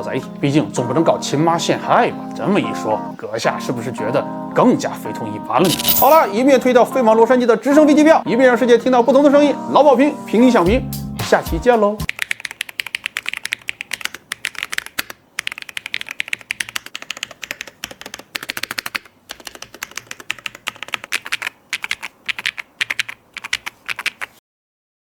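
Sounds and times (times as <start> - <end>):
fast keyboard typing: 12.0 - 24.4.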